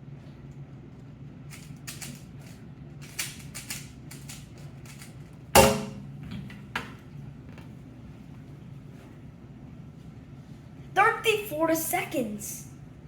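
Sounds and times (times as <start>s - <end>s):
loud thump with ringing tail: 5.6s - 6.0s.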